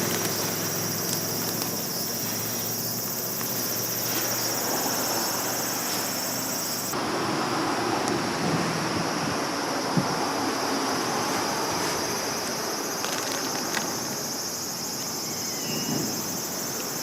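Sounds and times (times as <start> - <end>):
high-pitched insect chorus: 0.0 - 7.0, 9.0 - 17.0
outdoor noise: 0.0 - 17.0.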